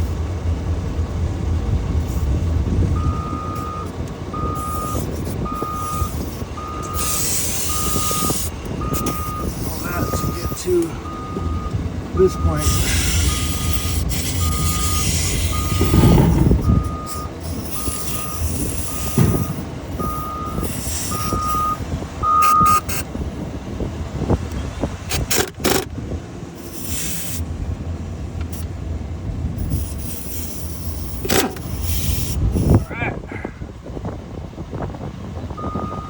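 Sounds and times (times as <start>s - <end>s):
low engine rumble: 0.0s - 36.0s
reversing alarm beeping: 3.0s - 22.9s, 35.6s - 36.0s
sharp metallic knocks: 15.4s - 17.5s.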